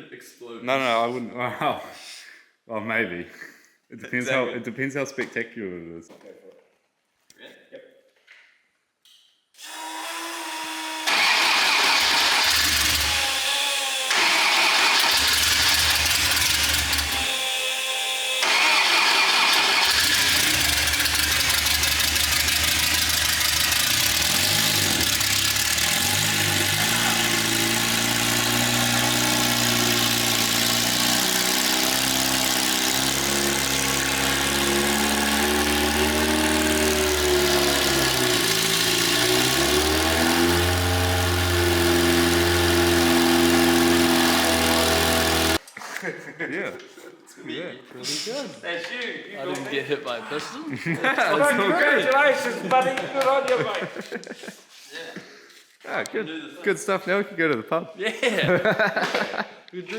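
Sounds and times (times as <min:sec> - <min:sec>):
race car engine running: 0:11.1 - 0:13.3, 0:14.1 - 0:17.3, 0:18.4 - 0:45.6.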